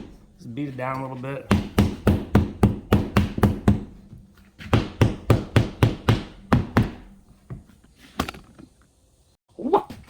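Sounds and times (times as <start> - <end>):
hammer striking drywall: 1.5 - 4.0, 4.6 - 7.1.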